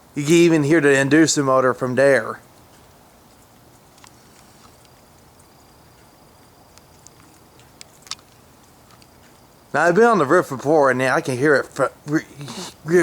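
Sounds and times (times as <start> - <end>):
light clicks: 6.7 - 9.5.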